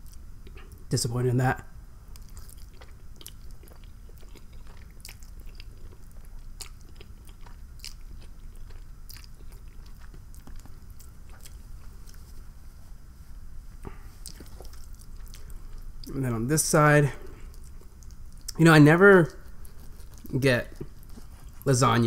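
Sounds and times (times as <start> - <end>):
chewing with wet mouth clicks: 0.0 - 0.9, 2.1 - 12.3, 14.2 - 16.2, 17.2 - 18.6, 19.3 - 21.6
low steady hum: 0.0 - 22.0.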